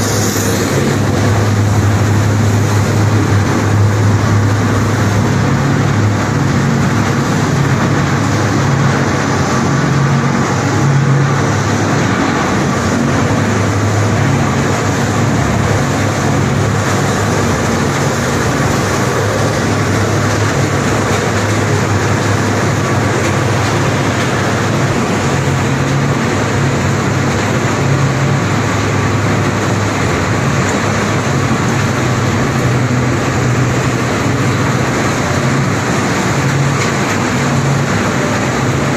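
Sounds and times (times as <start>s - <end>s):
machine running with low hum: 0.0s - 38.9s.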